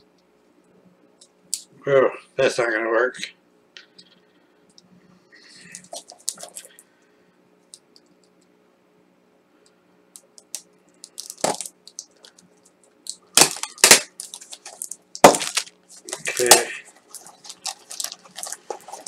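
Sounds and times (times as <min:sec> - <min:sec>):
packaging clicks and crinkles: 0:05.7 - 0:06.8, 0:10.2 - 0:19.0.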